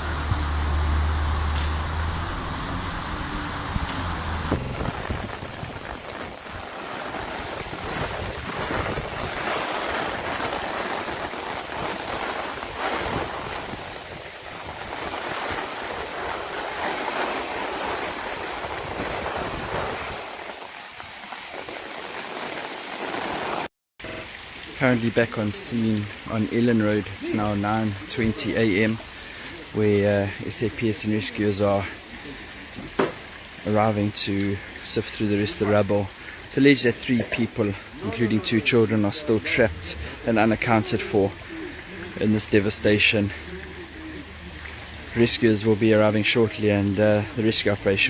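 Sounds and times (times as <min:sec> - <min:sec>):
heavy rain rushing: 0:00.0 - 0:48.0
wind buffeting microphone: 0:04.5 - 0:09.5.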